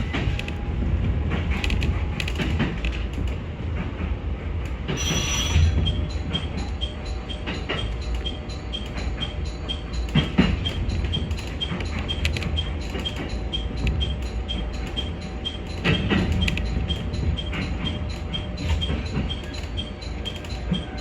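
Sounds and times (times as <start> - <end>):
railcar running: 0.0 - 21.0
alarm bell ringing: 5.0 - 21.0
short high warning beeps: 5.0 - 21.0.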